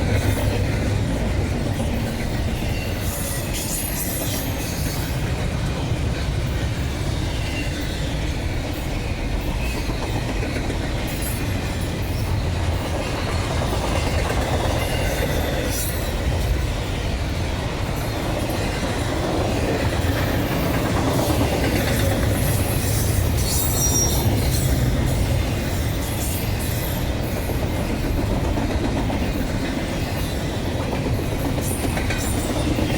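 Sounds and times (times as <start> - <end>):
train wheels rumbling on rail: 0.0 - 32.9
clacks over rail joints: 8.6 - 32.9
high wheel squeal: 22.7 - 24.9.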